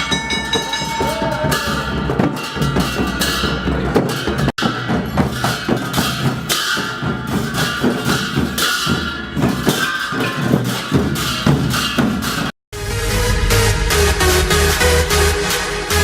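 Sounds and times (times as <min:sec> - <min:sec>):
hand cymbals clashing: 0:00.0 - 0:12.5
drums beaten in fast rhythm: 0:00.0 - 0:16.0.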